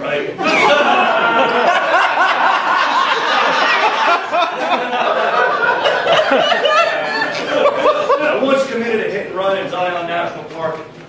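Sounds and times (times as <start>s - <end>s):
audience laughing: 0.4s - 8.7s.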